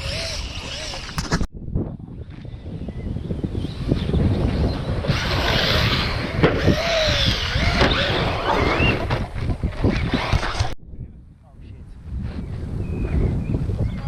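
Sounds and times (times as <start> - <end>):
electric toy truck motors whining: 0.0 - 1.2, 5.0 - 9.0
wind buffeting microphone: 0.0 - 14.0.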